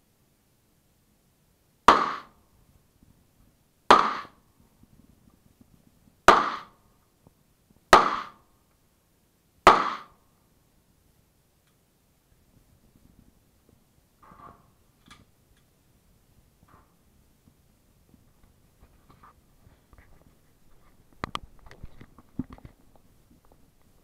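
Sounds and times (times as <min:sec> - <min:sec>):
pistol shots with echo: 0:01.9 - 0:02.3, 0:03.9 - 0:04.4, 0:06.3 - 0:06.8, 0:07.9 - 0:08.4, 0:09.7 - 0:10.2.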